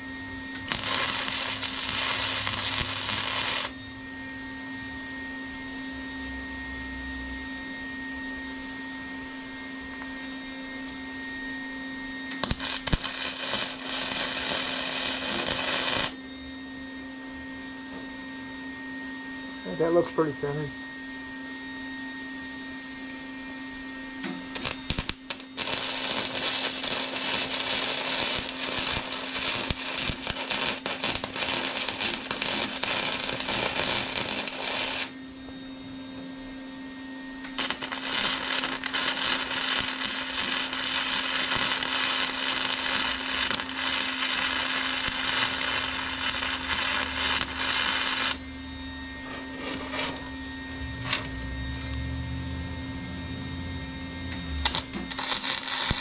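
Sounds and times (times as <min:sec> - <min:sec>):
steady hum: 0:00.5 - 0:03.9, 0:12.3 - 0:16.4, 0:24.2 - 0:36.1, 0:37.1 - 0:56.0
welder arc crackling: 0:00.6 - 0:03.8, 0:12.3 - 0:16.2, 0:24.2 - 0:35.2, 0:37.5 - 0:48.4, 0:54.6 - 0:56.0.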